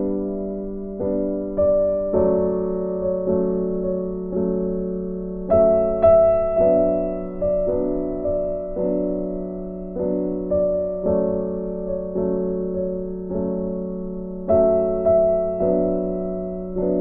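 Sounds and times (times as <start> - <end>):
electric piano chords: 0.0 - 17.0.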